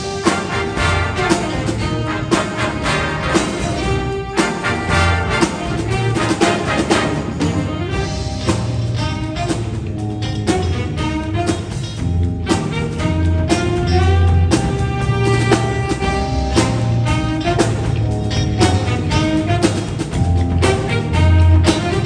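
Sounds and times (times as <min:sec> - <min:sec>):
jazz big band playing swing: 0:00.0 - 0:22.0.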